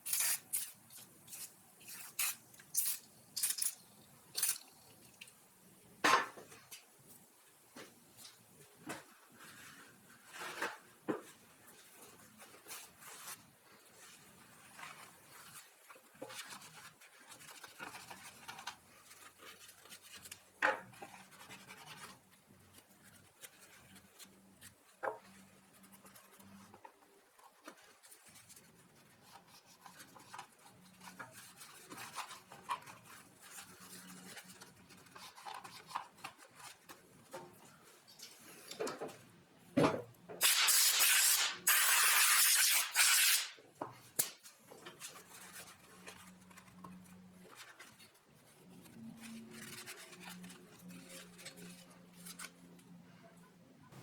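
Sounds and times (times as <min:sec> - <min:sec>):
hissing spray bursts: 0:40.4 - 0:43.6.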